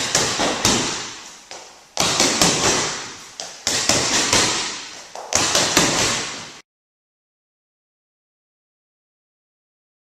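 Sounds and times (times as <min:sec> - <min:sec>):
punches hitting a striking bag: 0:00.0 - 0:01.2, 0:02.0 - 0:06.5.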